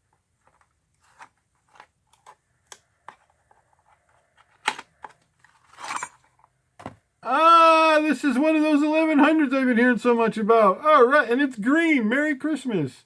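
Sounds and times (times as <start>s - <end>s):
packaging clicks and rustles: 0.0s - 6.6s
sharp handling noise: 0.4s - 7.1s.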